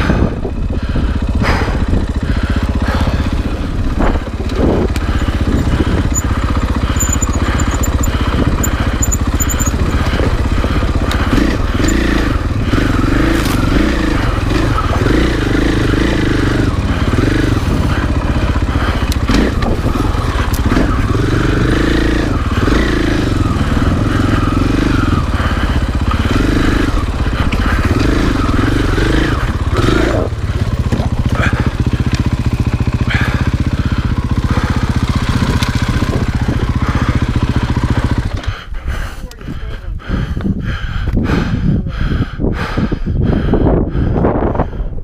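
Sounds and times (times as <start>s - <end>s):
motorcycle engine revving: 0.0s - 38.7s
knocks and clatter from bike: 3.9s - 12.2s, 30.0s - 38.6s.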